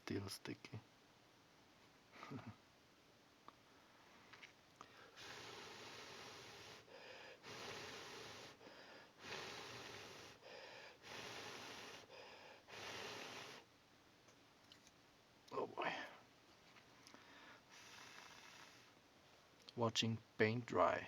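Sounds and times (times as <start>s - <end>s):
quick breaths: 3.7s - 13.7s, 16.9s - 19.0s.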